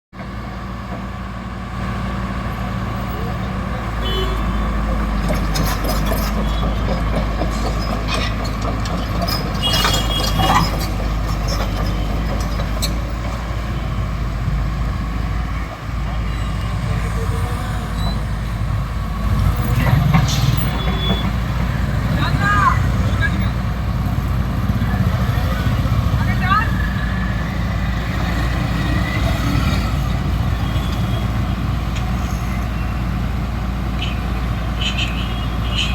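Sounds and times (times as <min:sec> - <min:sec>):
excavator diesel engine running: 0:00.2 - 0:35.9
high-pitched squeal: 0:16.2 - 0:21.9.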